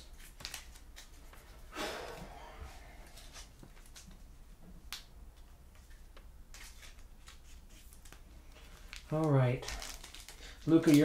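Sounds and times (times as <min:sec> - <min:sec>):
cards clicking as flipped: 0:00.2 - 0:01.2.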